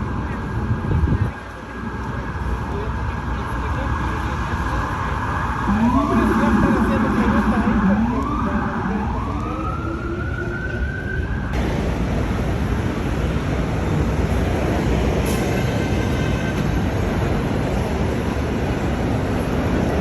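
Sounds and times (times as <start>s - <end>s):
emergency siren wailing: 0.0s - 11.8s, 14.3s - 17.8s
loud steady rumbling: 11.4s - 20.0s.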